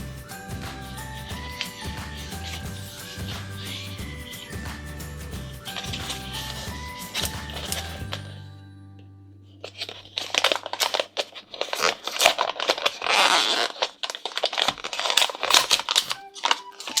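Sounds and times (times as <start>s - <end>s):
plastic packaging crinkling: 0.0s - 8.4s, 9.6s - 17.0s
packaging tearing: 9.7s - 17.0s.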